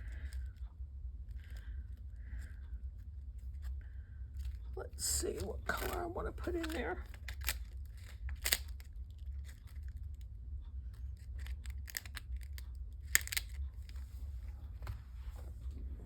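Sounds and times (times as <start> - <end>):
steady low hum: 0.0 - 16.0
paper rustling: 4.4 - 10.0.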